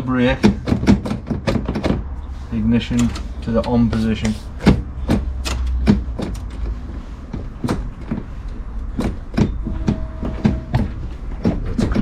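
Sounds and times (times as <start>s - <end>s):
gear selector clicks and knocks: 2.9s - 12.0s
low hum: 9.3s - 11.6s
short steady tone: 9.6s - 10.9s.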